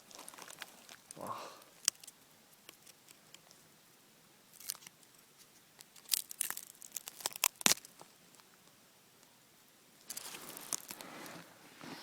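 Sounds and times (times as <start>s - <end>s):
birch bark tearing and crackling: 0.0s - 3.5s, 4.5s - 5.2s, 5.8s - 8.5s, 10.0s - 11.0s.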